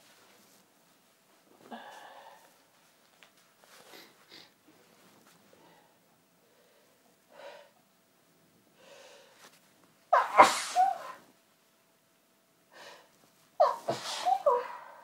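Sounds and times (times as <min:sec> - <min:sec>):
woman sneezing: 0:10.1 - 0:11.2, 0:13.6 - 0:15.0.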